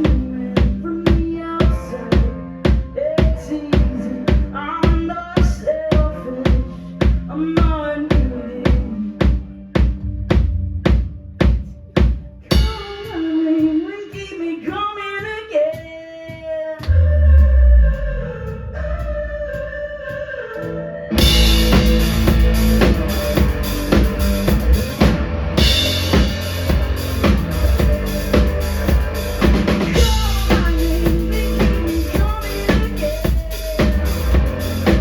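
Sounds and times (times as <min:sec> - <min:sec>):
drum hits: 0:04.3 - 0:14.2, 0:21.2 - 0:35.0
heavy low note: 0:10.0 - 0:12.5, 0:21.1 - 0:32.6
live rock band playing: 0:21.1 - 0:35.0.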